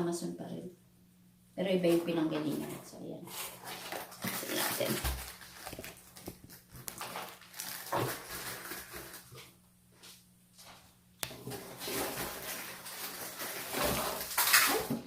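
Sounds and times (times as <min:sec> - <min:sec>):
plastic packaging crinkling: 0:03.3 - 0:09.5, 0:11.3 - 0:15.0.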